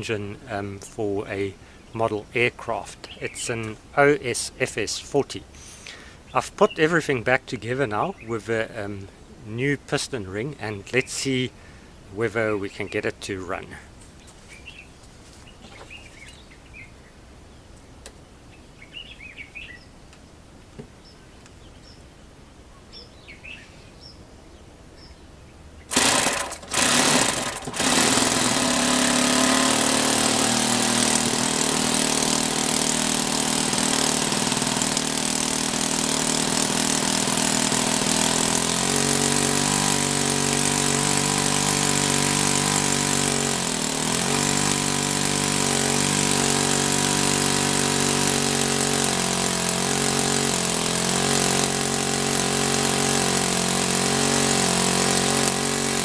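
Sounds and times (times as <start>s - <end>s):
model aircraft engine running: 25.9s - 56.0s.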